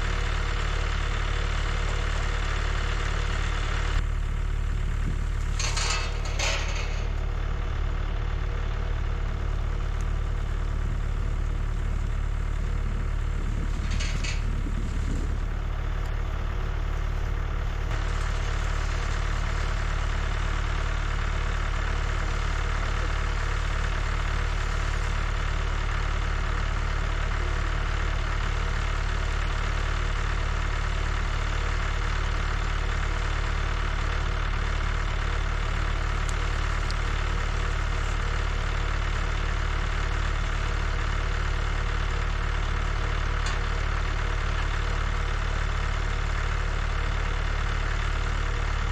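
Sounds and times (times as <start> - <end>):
tractor engine running: 0.0 - 48.9.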